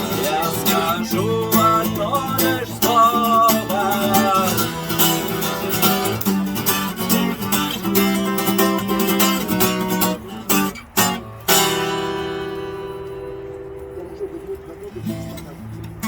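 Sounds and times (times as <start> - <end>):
person singing: 0.0 - 4.9
acoustic guitar strumming: 0.0 - 16.0.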